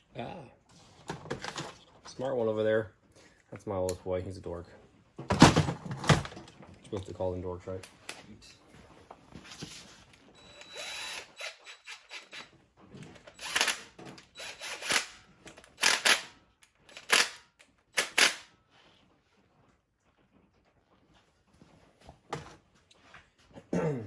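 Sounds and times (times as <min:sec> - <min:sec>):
handheld power tool bursts: 0:10.4 - 0:12.6, 0:13.3 - 0:18.5.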